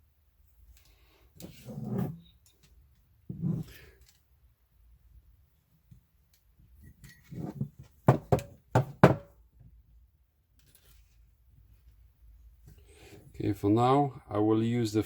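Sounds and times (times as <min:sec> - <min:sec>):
knocking: 0:08.0 - 0:09.3.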